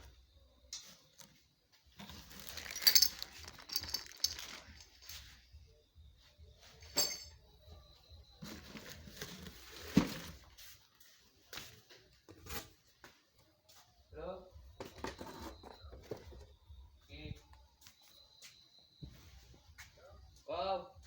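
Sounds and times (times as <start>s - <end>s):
hard objects being set down: 2.0s - 5.1s, 6.8s - 7.4s
rustling: 2.0s - 5.3s
clinks: 2.3s - 5.0s, 6.8s - 7.4s.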